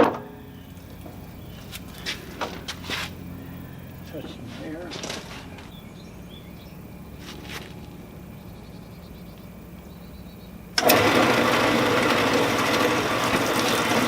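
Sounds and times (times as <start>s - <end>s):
low steady hum: 0.0s - 10.9s
metal-cutting saw running: 10.8s - 14.0s.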